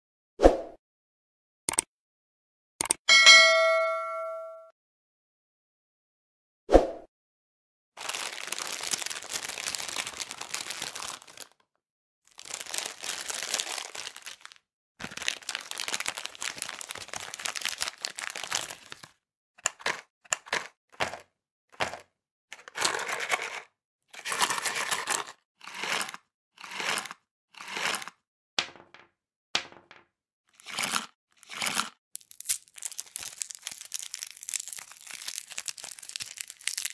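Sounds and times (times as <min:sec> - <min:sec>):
candy wrapper crinkling: 0:08.0 - 0:11.6, 0:12.3 - 0:20.7, 0:24.2 - 0:28.1, 0:30.6 - 0:36.9.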